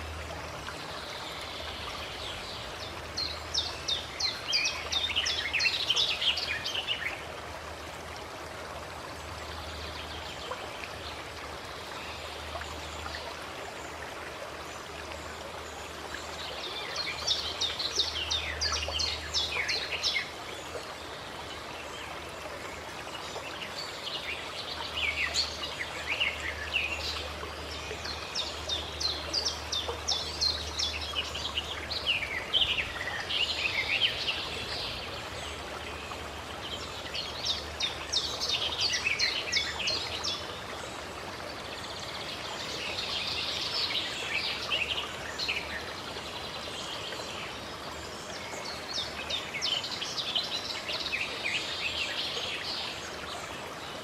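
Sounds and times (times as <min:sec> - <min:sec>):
songbirds singing: 0:00.0 - 0:07.4, 0:14.7 - 0:54.0
stream rushing: 0:00.0 - 0:54.0.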